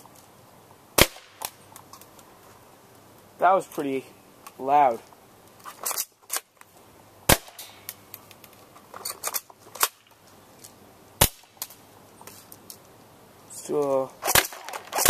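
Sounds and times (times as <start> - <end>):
airsoft gun single shots: 1.0 - 1.6, 7.3 - 7.9, 11.2 - 11.6.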